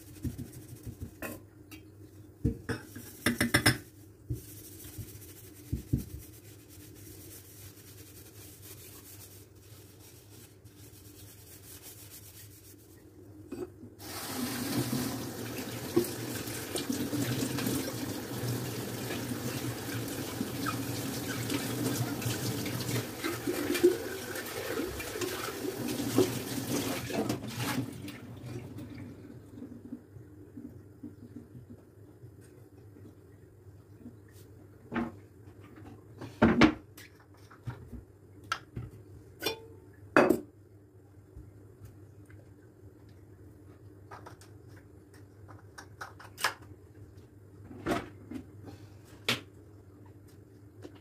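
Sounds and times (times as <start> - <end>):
tap water running into sink: 14.0 - 29.0.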